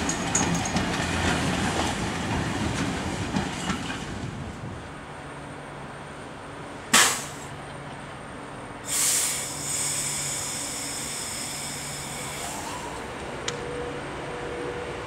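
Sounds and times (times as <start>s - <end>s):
train air brakes hissing: 6.9s - 7.6s, 8.8s - 13.1s.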